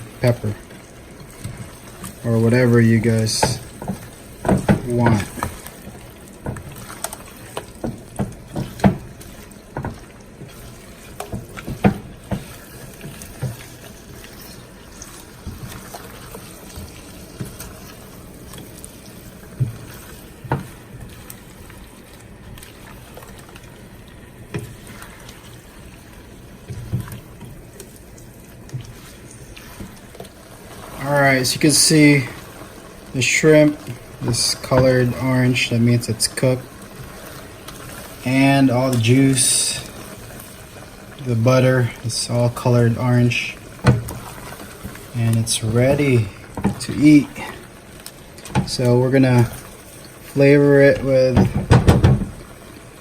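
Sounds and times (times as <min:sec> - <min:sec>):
shrimp bubbling in butter: 0:00.0 - 0:53.0
utensil knocking against pan: 0:51.3 - 0:52.3.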